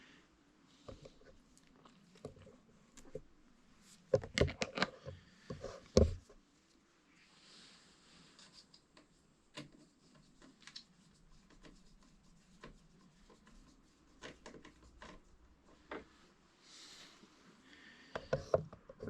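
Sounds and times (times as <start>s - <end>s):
faint hand-handling clicks and rubbing: 0.8s - 6.8s, 8.2s - 16.3s.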